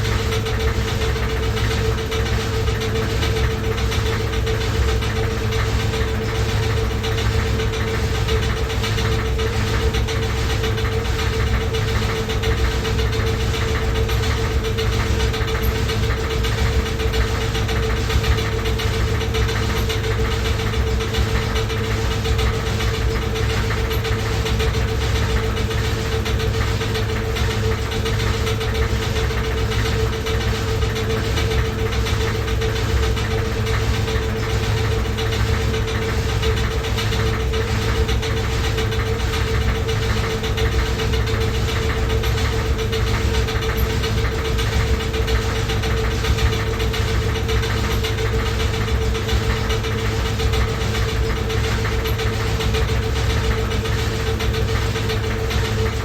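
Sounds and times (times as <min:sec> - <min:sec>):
washing machine running: 0:00.0 - 0:56.0.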